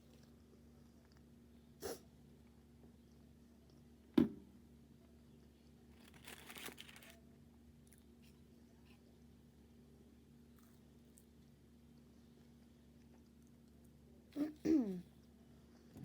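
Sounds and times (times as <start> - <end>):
paper packaging rustling: 5.9 - 7.2.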